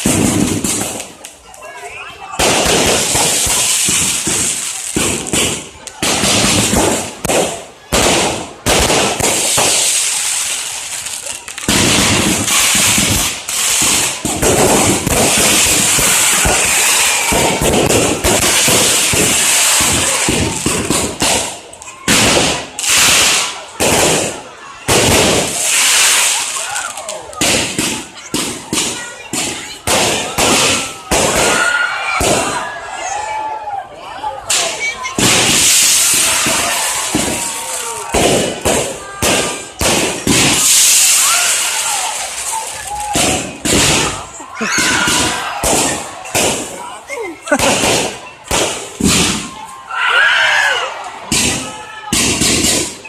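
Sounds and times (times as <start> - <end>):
fireworks bangs and crackles: 0.0 - 33.5, 34.4 - 49.8, 50.4 - 53.0
fireworks whistles gliding in pitch: 11.9 - 21.2.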